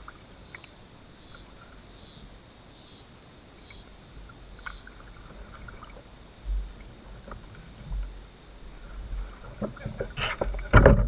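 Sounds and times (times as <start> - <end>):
cicadas droning: 0.0 - 11.0
paddle water drips and splashes: 3.6 - 6.2.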